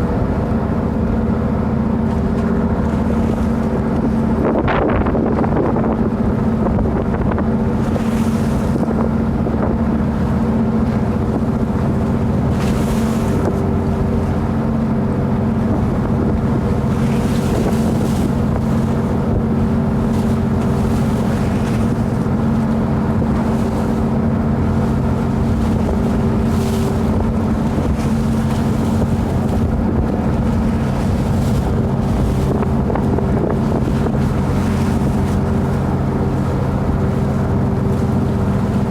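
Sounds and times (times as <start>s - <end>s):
boat engine running: 0.0s - 38.9s
wind buffeting microphone: 0.0s - 38.9s.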